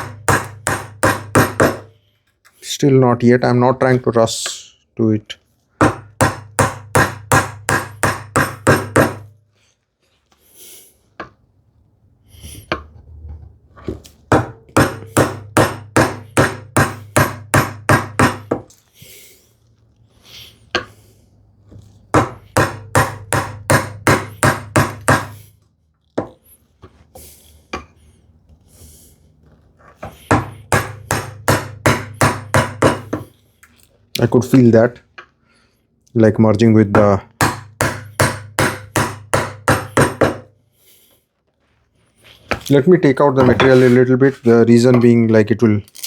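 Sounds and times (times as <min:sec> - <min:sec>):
chisel struck into wood: 0:00.0 - 0:01.9, 0:05.8 - 0:09.3, 0:14.3 - 0:18.7, 0:22.1 - 0:25.4, 0:30.3 - 0:33.3, 0:36.9 - 0:40.5
scraping and knocking wood: 0:42.4 - 0:45.3.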